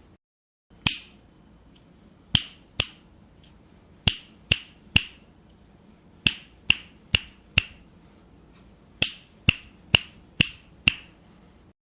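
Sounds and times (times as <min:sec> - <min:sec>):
finger snaps: 0:01.8 - 0:05.2, 0:06.2 - 0:07.8, 0:09.0 - 0:11.2.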